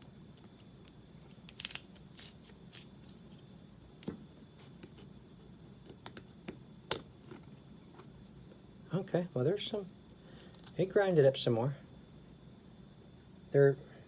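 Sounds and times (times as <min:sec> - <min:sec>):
spice grinder clicking and crunching: 0:00.4 - 0:03.2.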